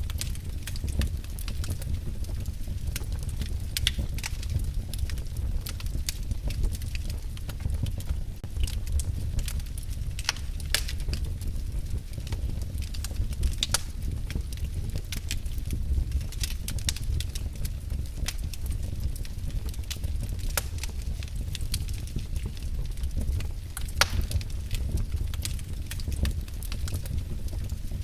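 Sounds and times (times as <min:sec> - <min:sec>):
low fire rumble: 0:00.0 - 0:28.0
wood fire crackling and popping: 0:00.0 - 0:28.0.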